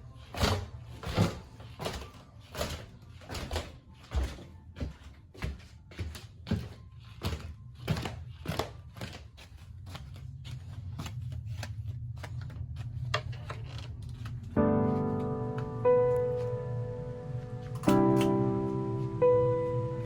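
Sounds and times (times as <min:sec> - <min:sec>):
piano music: 0:14.4 - 0:20.0.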